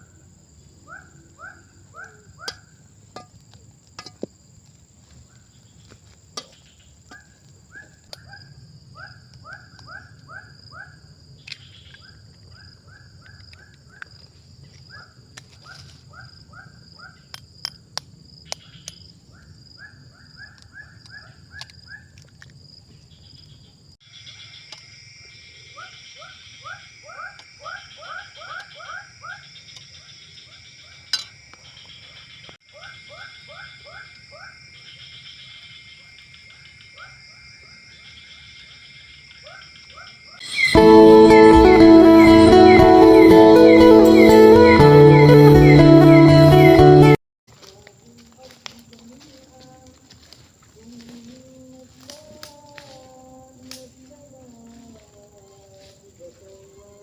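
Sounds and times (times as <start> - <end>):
insects droning: 0.0 - 57.0
animal quick rising chirps: 40.4 - 46.8.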